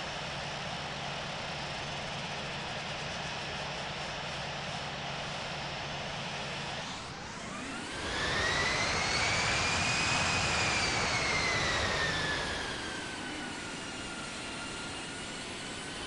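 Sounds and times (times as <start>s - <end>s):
jet engine whine: 0.0s - 16.0s.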